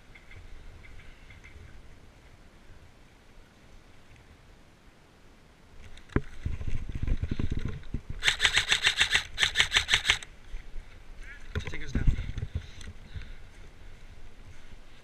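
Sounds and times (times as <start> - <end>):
rapid airsoft rifle fire: 8.2 - 10.2.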